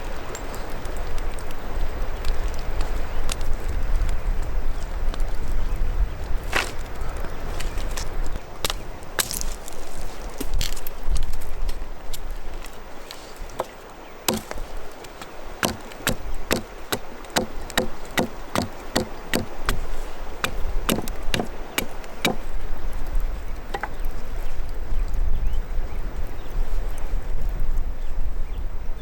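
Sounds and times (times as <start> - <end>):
sharp chopping strikes: 14.3 - 22.5.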